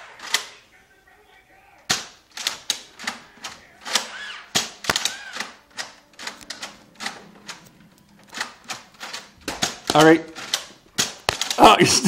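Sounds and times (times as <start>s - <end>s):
toy blasters firing: 3.8s - 6.4s.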